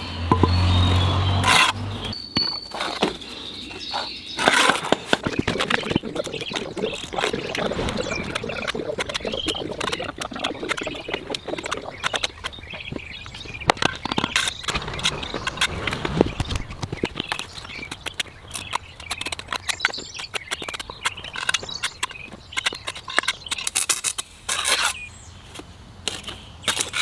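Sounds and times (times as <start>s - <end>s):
bricks knocking: 0.3s - 3.2s
trowel scraping in mortar: 0.3s - 27.0s.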